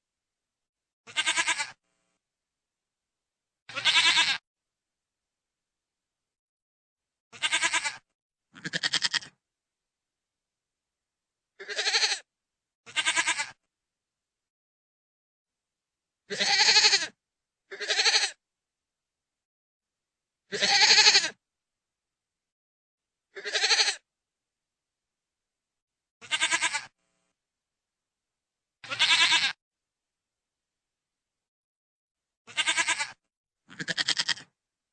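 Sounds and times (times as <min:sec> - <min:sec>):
goat bleating: 0:01.1 - 0:01.8, 0:03.7 - 0:04.4, 0:07.3 - 0:09.4, 0:11.6 - 0:12.3, 0:12.9 - 0:13.6, 0:16.3 - 0:18.4, 0:20.5 - 0:21.4, 0:23.4 - 0:24.0, 0:26.2 - 0:26.9, 0:28.8 - 0:29.6, 0:32.5 - 0:34.5.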